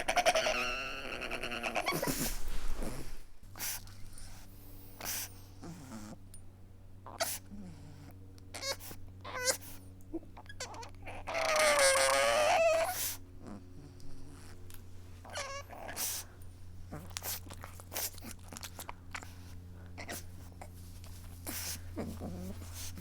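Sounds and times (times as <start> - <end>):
dog whimpering and whining: 0.0 - 3.2, 7.1 - 14.6, 15.2 - 18.4, 21.4 - 23.0
dog snuffling: 0.0 - 6.2, 11.6 - 23.0.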